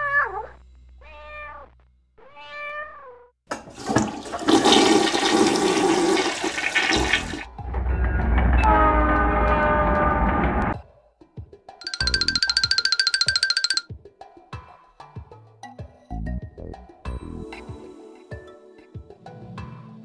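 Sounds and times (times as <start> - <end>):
cat meowing: 0.0 - 3.3
toilet flushing: 3.5 - 7.5.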